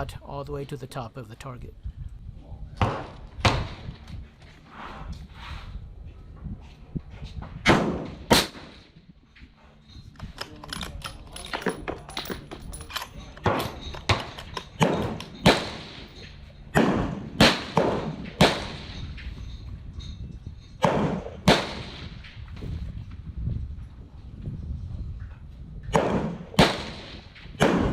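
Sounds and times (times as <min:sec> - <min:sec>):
rifle shots: 0:07.6 - 0:08.9, 0:13.4 - 0:19.0, 0:20.8 - 0:22.2, 0:25.9 - 0:27.9.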